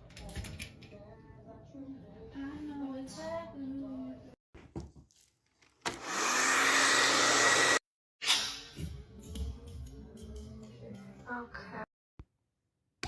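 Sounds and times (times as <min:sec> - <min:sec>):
electric blower motor: 0:05.9 - 0:07.8.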